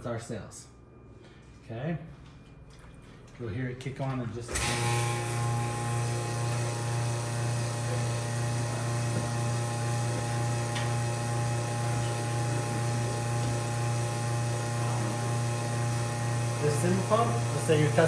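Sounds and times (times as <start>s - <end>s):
pump motor humming: 4.5s - 18.0s.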